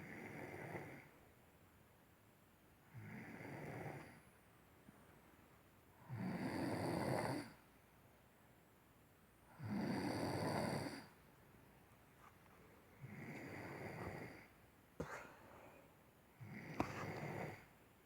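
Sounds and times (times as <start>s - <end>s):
rasping snores: 3.0s - 4.2s, 9.6s - 11.1s, 13.0s - 14.5s.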